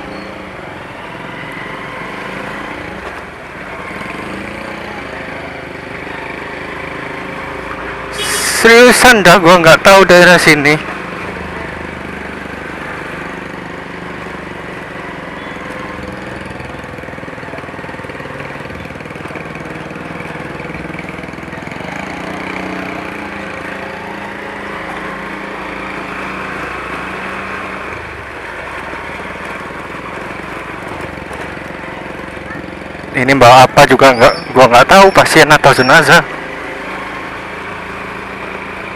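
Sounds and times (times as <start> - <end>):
road and wind noise: 0.0 - 38.9
motorcycle engine running: 10.8 - 35.2.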